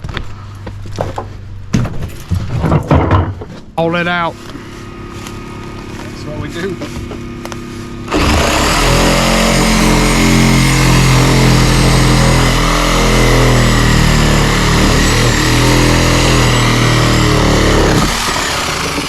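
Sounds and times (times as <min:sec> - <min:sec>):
engine revving high: 0:07.6 - 0:19.0.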